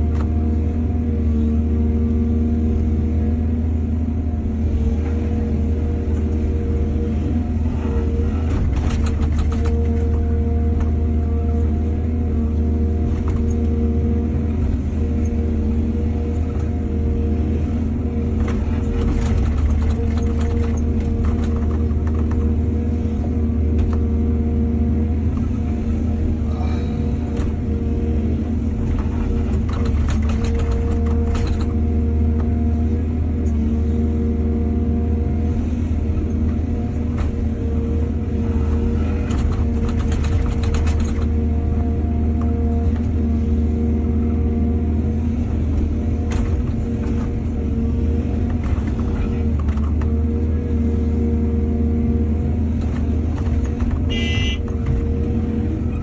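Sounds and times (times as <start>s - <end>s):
diesel engine deep rumble: 0.0s - 56.0s
metal clanks and rattles: 18.5s - 22.5s, 28.8s - 31.9s, 39.1s - 41.5s.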